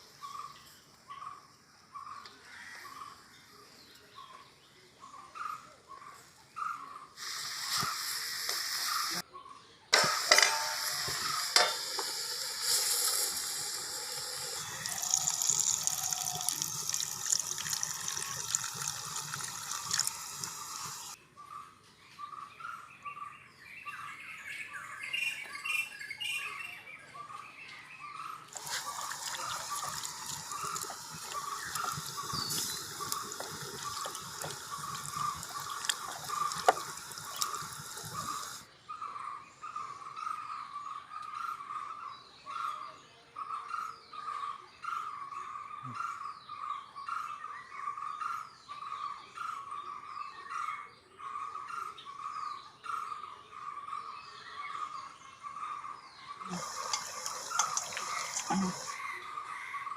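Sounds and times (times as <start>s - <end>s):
birds chirping: 0.0s - 59.9s
water splashing: 11.0s - 21.2s, 28.5s - 38.6s, 56.5s - 59.0s.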